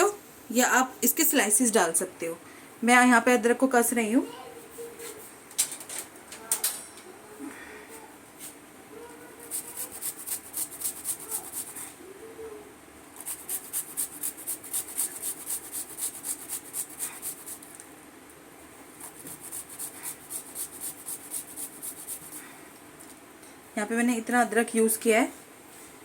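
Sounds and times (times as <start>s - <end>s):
ginger rasping on a hand grater: 9.4s - 11.8s, 13.2s - 17.8s, 19.0s - 22.4s.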